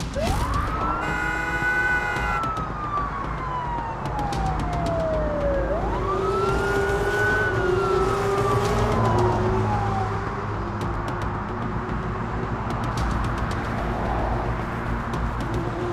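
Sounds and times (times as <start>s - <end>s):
siren wailing: 0.1s - 10.8s.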